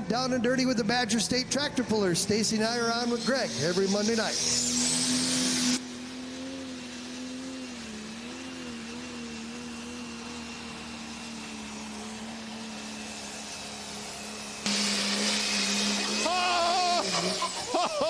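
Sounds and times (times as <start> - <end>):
diesel tractor engine running: 0.0 - 18.0
faint high whine: 2.4 - 6.8.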